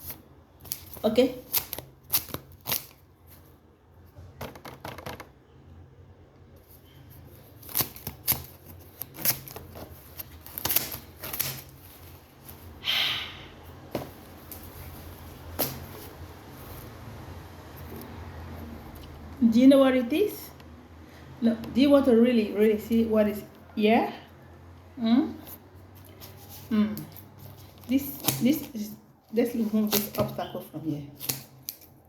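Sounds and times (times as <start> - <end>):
packaging crinkling and rustling: 0.0 - 3.6, 7.3 - 12.8.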